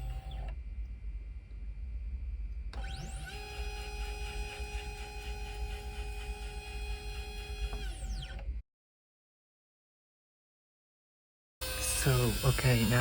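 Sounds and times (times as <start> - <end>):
spindle motor whining: 0.0 - 0.6, 2.8 - 8.6, 11.6 - 13.0.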